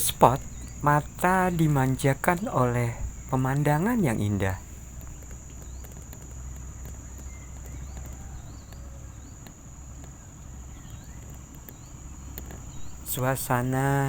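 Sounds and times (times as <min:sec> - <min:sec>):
high-pitched insect drone: 0:00.0 - 0:05.6, 0:12.8 - 0:14.0
low steady rumble: 0:00.0 - 0:14.0.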